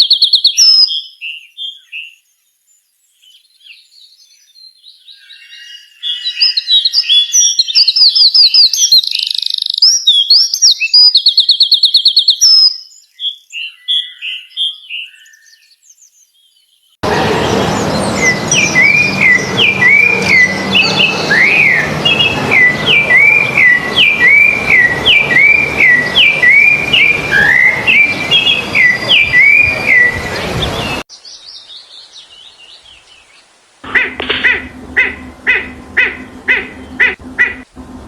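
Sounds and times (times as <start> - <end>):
songbird whistled call: 0.0 - 2.2, 5.1 - 16.3, 17.9 - 33.0
higher falling bird notes: 33.8 - 38.0.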